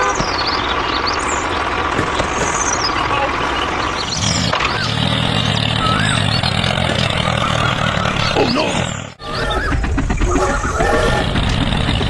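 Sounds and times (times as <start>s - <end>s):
low engine-like rumble: 0.0s - 12.0s
wavering animal calls: 3.0s - 12.0s.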